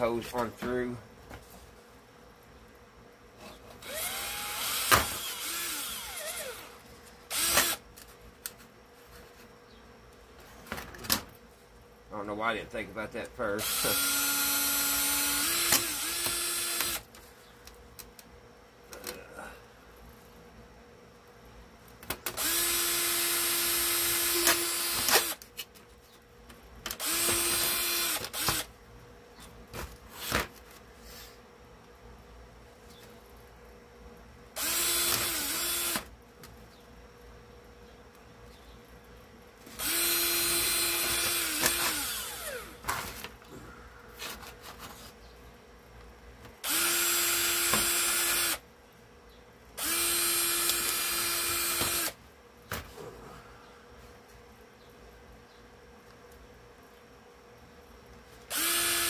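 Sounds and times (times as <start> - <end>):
electric drill boring holes: 3.8 - 7.8, 13.6 - 17.1, 22.4 - 25.4, 27.0 - 28.7, 34.6 - 36.1, 39.8 - 42.8, 46.6 - 48.6, 49.8 - 52.2, 58.5 - 59.0.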